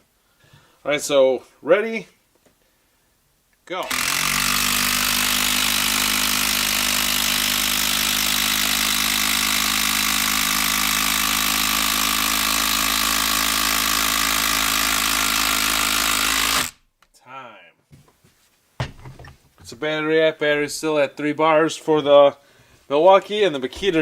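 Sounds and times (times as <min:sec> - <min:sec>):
impact driver hammering: 0:03.8 - 0:16.8.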